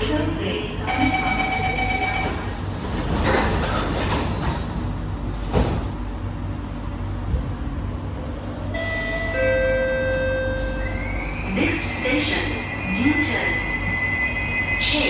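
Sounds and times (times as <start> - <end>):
train doors sliding shut: 1.9 - 6.4.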